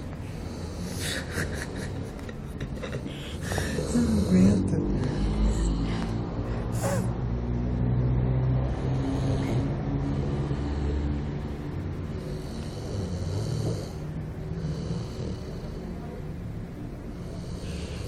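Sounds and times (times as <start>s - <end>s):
pet snoring: 0.3s - 1.8s, 3.4s - 6.2s, 8.9s - 11.3s, 12.1s - 16.0s, 17.1s - 18.0s.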